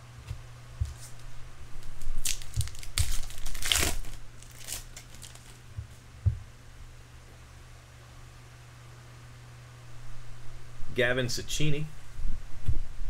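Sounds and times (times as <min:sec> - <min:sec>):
wrapper crinkling and tearing: 0:01.8 - 0:05.6
soft knock: 0:05.8 - 0:06.4.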